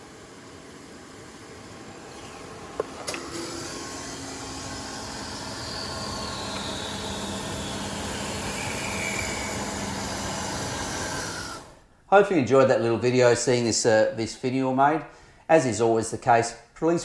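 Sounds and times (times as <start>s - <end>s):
wood lathe running: 0.0s - 11.9s
faint whine sliding down: 0.1s - 11.8s.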